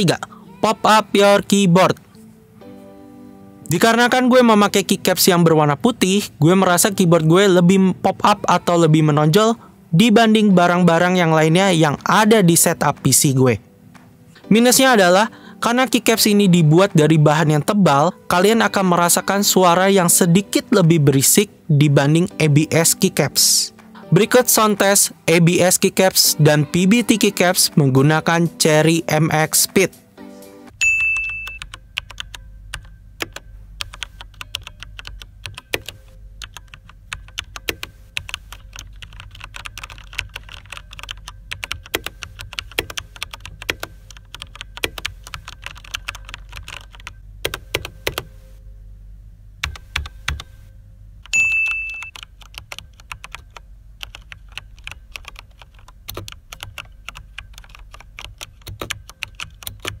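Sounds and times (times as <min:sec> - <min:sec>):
short beep: 0:30.8 - 0:31.6, 0:51.3 - 0:52.1.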